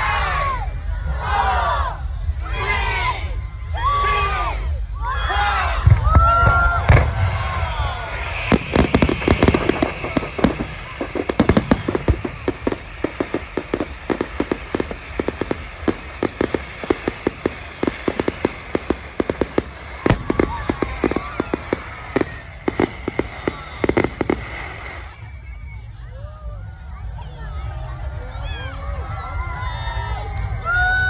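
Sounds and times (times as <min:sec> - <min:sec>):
fireworks crackling and banging: 0:05.9 - 0:25.8.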